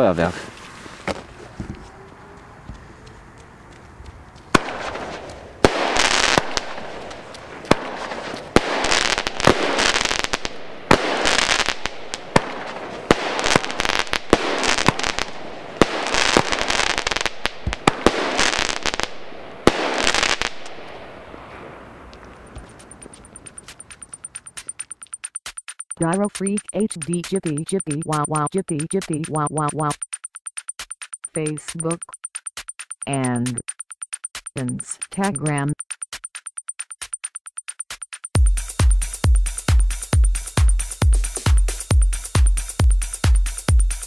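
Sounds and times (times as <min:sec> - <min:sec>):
firework shots banging: 0:04.5 - 0:21.8.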